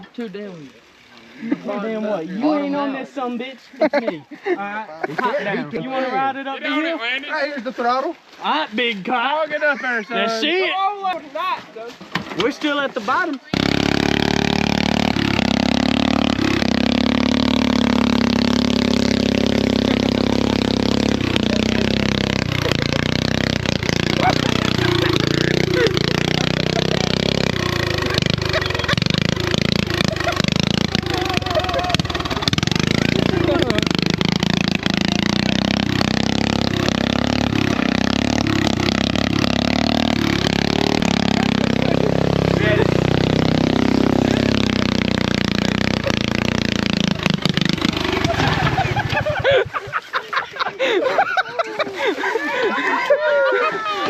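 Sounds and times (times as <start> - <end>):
riding lawn mower engine: 13.5 - 54.0.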